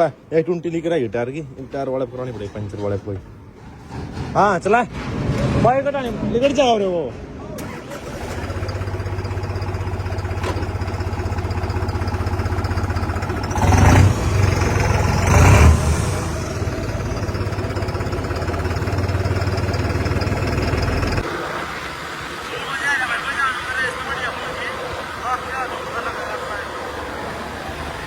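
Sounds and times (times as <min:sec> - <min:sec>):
tractor diesel engine revving: 0:07.6 - 0:28.0.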